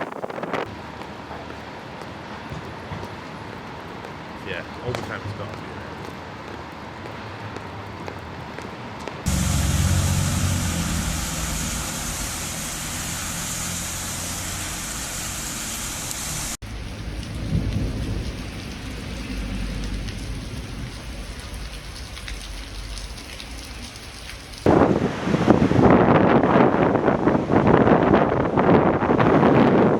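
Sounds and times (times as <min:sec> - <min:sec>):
low rumble: 0:09.3 - 0:21.2
heavy rain falling: 0:09.3 - 0:26.4
raindrops ticking: 0:15.5 - 0:24.7.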